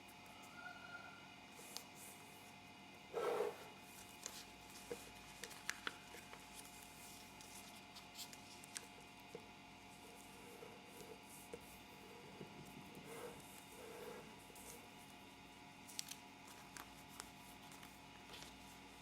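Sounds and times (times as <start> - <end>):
faint steady hum: 0.0 - 19.0
paper rustling: 3.9 - 9.0, 15.8 - 19.0
paper creasing clicks and taps: 4.0 - 9.5, 15.8 - 18.9.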